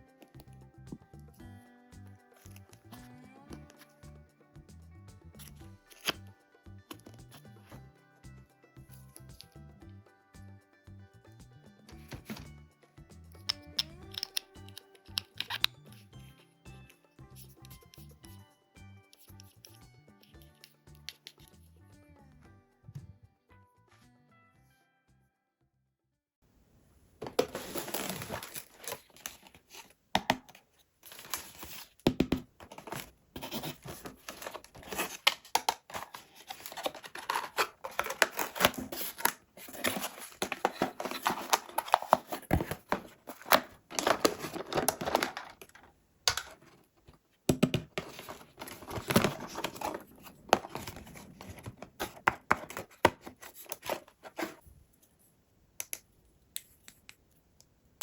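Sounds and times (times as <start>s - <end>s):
cardboard and plastic tearing: 27.2s - 32.0s, 32.6s - 46.8s, 47.6s - 54.6s.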